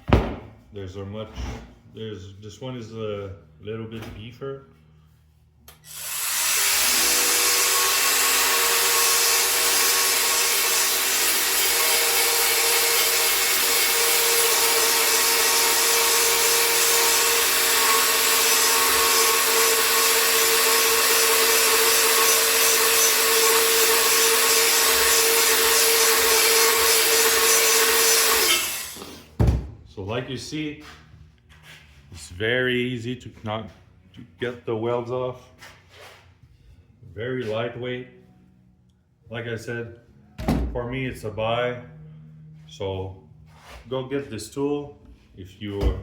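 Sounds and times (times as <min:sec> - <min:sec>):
belt sander grinding metal: 0:05.9 - 0:29.1.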